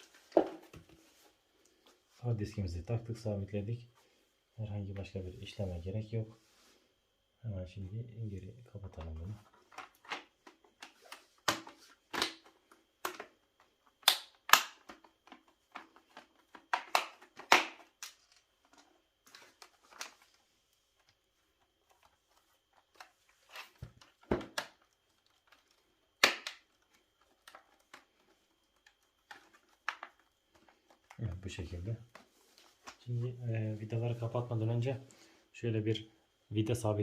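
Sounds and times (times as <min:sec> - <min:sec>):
plastic laptop casing clicks: 0:09.6 - 0:20.3, 0:22.7 - 0:31.2.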